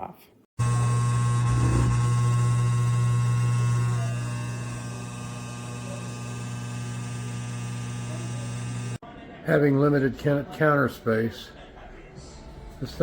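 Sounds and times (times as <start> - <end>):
electric hum: 0.6 - 9.0.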